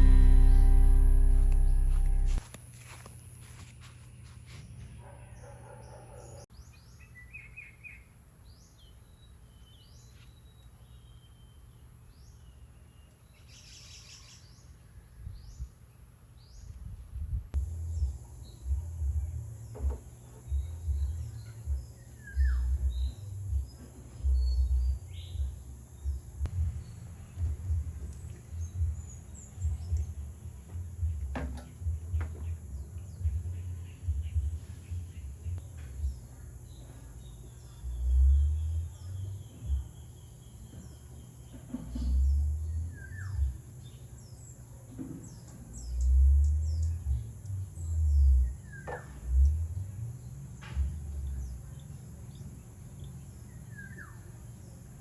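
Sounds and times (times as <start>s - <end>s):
small birds chirping: 17.8s - 55.0s.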